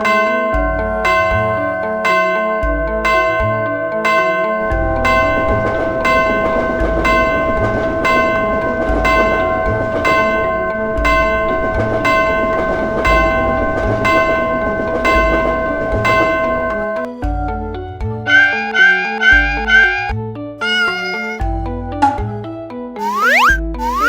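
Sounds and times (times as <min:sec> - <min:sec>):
passing train rumble: 0:00.0 - 0:17.1
railway crossing bell ringing: 0:00.0 - 0:17.1.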